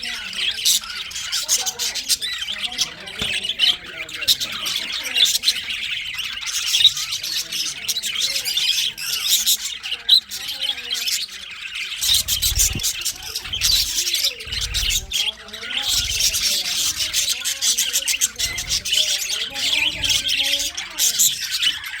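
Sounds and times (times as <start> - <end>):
budgies chirping: 0.0 - 22.0
low muffled pulses: 12.0 - 17.4.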